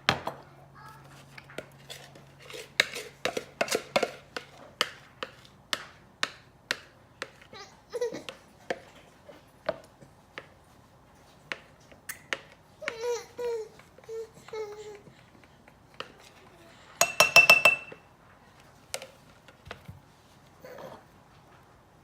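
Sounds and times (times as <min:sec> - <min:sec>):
utensil tapping against bowl and mug: 0:17.0 - 0:18.0.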